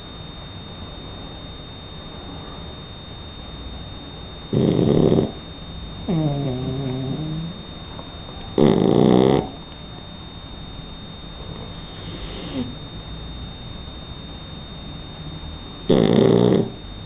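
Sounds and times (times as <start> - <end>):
puppy snoring: 4.5 - 7.8, 8.5 - 9.7, 11.4 - 12.8, 15.8 - 16.8.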